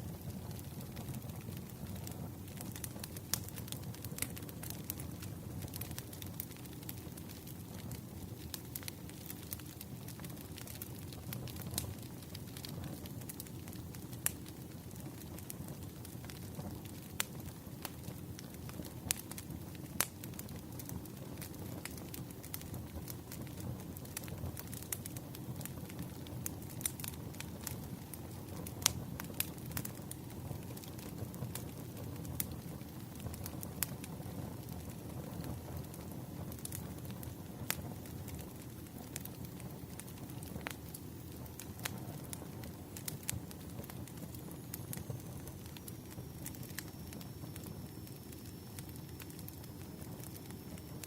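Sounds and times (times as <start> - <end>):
fire low rumble: 0.0 - 51.0
wood fire crackling and popping: 0.0 - 51.0.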